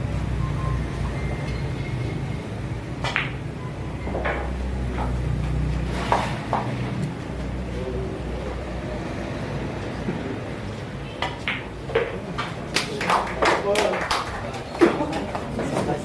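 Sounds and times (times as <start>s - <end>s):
billiard balls clacking: 3.0s - 3.4s.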